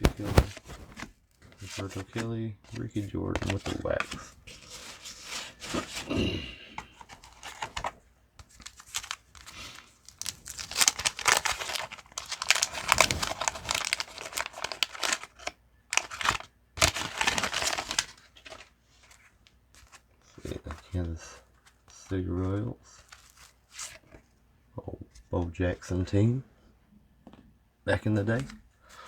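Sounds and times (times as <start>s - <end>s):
waxed paper wrapper tearing: 0.0s - 1.0s, 8.6s - 18.6s
wrapper crinkling: 0.0s - 1.0s, 8.5s - 18.7s.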